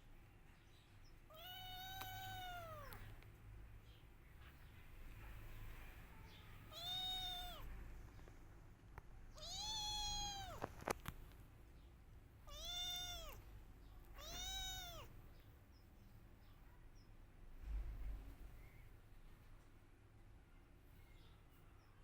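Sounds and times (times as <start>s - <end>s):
kitten meowing: 1.3s - 3.1s, 6.7s - 7.7s, 9.3s - 10.8s, 12.5s - 13.4s, 14.2s - 15.1s.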